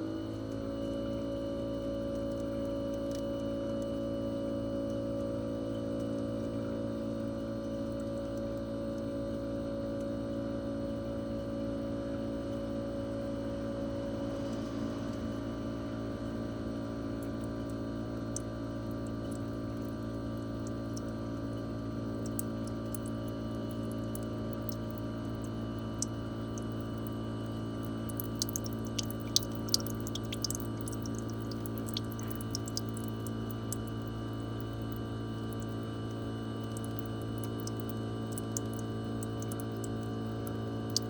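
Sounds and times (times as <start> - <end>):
air conditioner compressor hum: 0.0 - 41.0
faint light ticks: 2.4 - 3.2.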